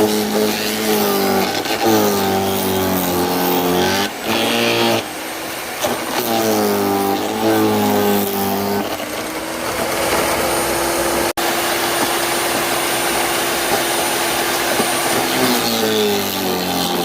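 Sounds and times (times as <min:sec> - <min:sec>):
electric wood chipper whining: 0:00.0 - 0:17.0.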